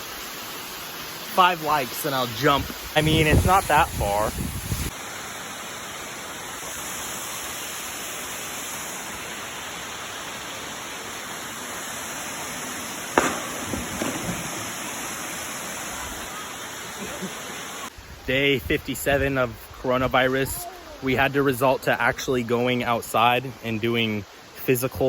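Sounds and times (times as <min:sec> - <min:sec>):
waterfall rushing: 0:00.0 - 0:18.2
sharp knocks: 0:13.2 - 0:14.7.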